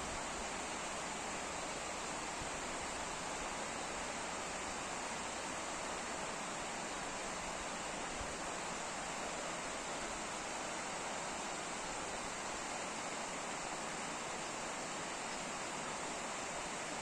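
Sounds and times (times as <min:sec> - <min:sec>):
water rushing: 0:00.0 - 0:17.0.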